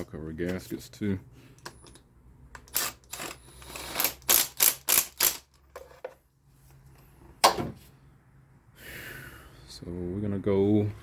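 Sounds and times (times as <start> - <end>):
hand tools rasping: 2.6 - 5.4.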